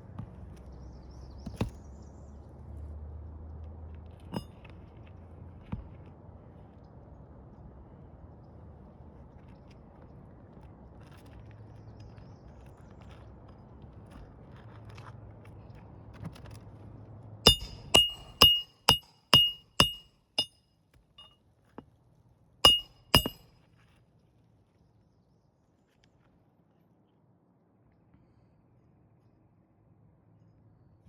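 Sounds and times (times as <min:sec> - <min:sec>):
hammer striking nail: 0:17.5 - 0:20.5, 0:22.7 - 0:23.4.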